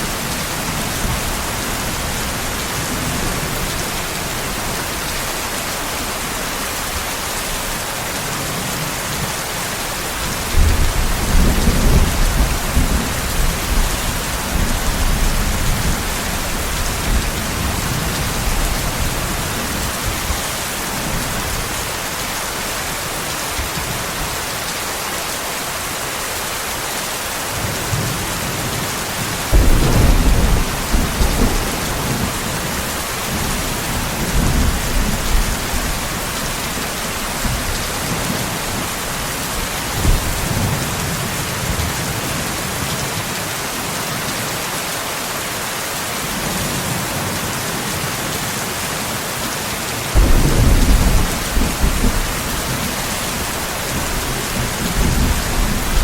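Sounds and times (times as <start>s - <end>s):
heavy rain hissing: 0.0s - 56.0s
loud thunderclap: 29.5s - 36.0s, 50.2s - 56.0s
thunder rumbling: 29.5s - 41.2s, 50.2s - 56.0s.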